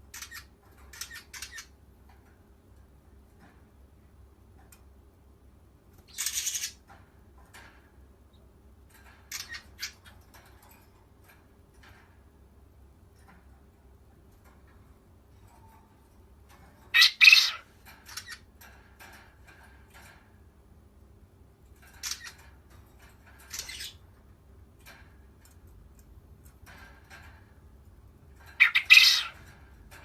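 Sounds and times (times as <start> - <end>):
quail harsh calls: 17.0 - 17.6, 28.6 - 29.4.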